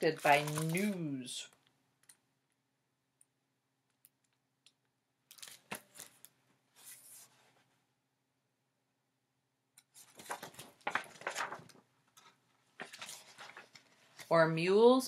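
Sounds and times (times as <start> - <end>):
paper rustling: 0.0 - 1.1, 5.4 - 7.6, 9.9 - 14.3.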